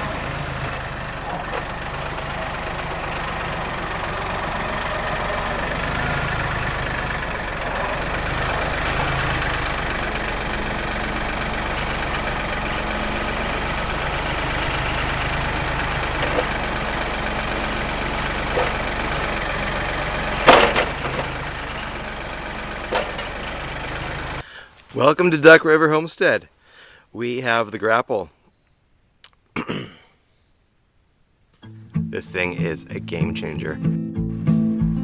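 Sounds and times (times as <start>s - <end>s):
metallic clank: 0.0s - 22.0s, 22.6s - 24.4s
short knocks: 0.0s - 24.4s
tractor diesel engine running: 0.0s - 24.5s, 31.8s - 34.0s.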